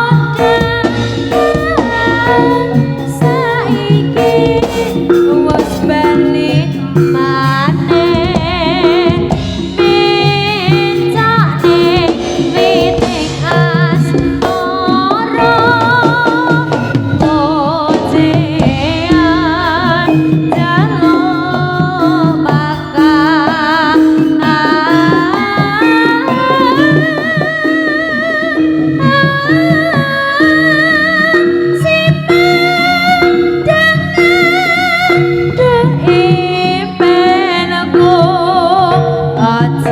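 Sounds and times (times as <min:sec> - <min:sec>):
drums: 0:00.0 - 0:39.9
high wavering melody: 0:00.0 - 0:39.9
gong-like tones: 0:00.1 - 0:25.4.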